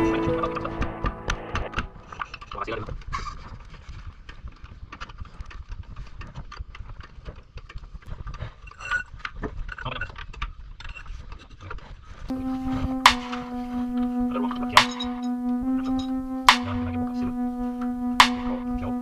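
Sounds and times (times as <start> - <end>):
background music: 0.0 - 2.3, 12.3 - 19.0.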